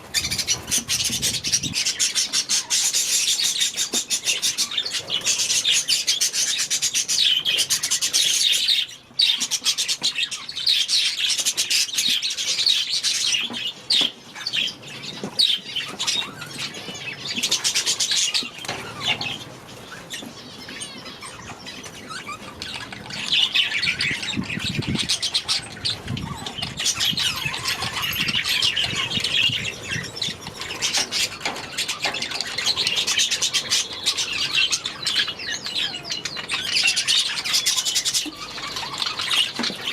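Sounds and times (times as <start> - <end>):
budgerigars chattering and warbling: 0.0 - 39.9.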